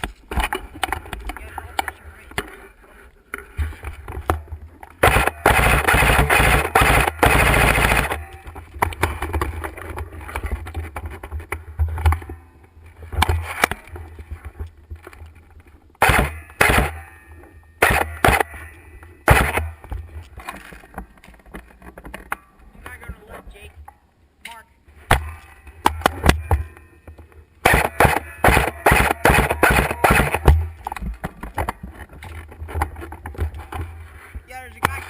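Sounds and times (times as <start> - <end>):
airsoft rifle full-auto bursts: 5.0 - 8.4, 16.0 - 17.1, 17.8 - 18.6, 19.2 - 19.8, 27.6 - 30.6.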